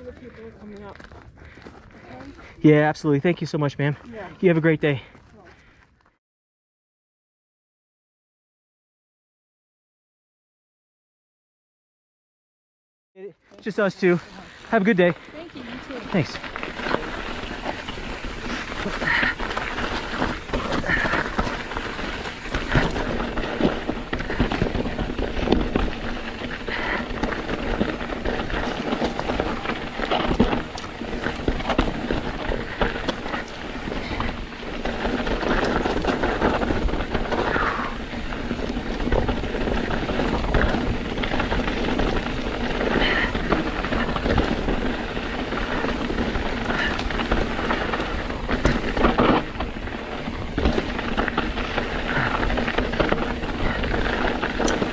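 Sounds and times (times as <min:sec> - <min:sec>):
bike tyres crunching on stones: 0:00.0 - 0:04.3, 0:13.5 - 0:54.9
bike rattling and knocking: 0:13.7 - 0:54.9.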